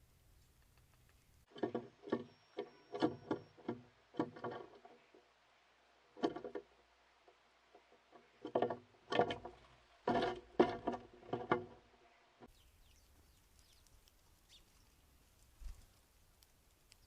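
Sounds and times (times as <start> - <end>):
faint high ticks and chips: 12.5 - 17.0.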